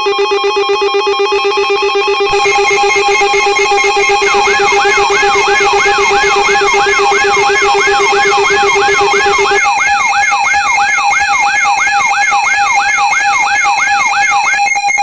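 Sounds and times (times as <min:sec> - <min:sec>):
pulsing alarm tone: 0:00.3 - 0:15.0
lower pulsing tone: 0:02.3 - 0:09.8
electronic siren yelping: 0:02.3 - 0:15.0.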